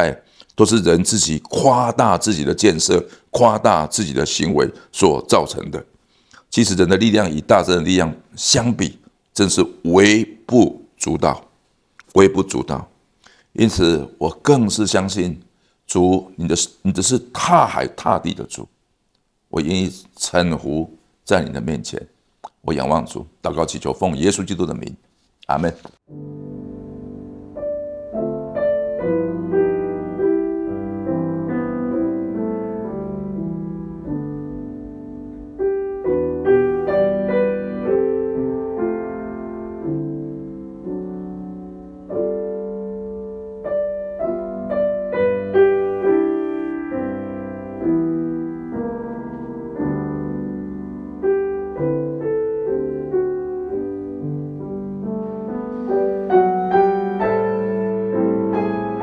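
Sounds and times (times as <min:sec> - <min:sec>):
solo piano melody: 0:26.1 - 0:59.0.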